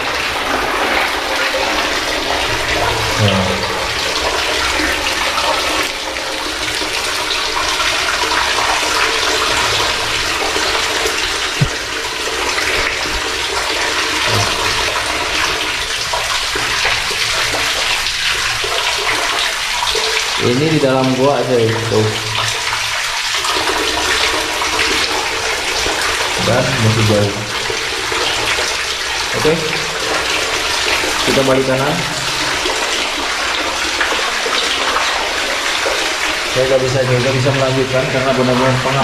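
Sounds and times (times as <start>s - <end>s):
running water rushing: 0.0s - 39.0s
soft low thumps: 11.6s - 11.9s.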